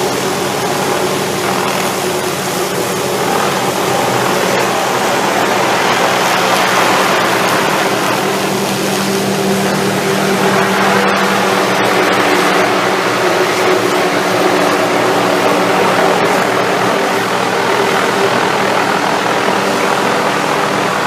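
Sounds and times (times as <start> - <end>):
helicopter rotor and engine: 0.0 - 21.0.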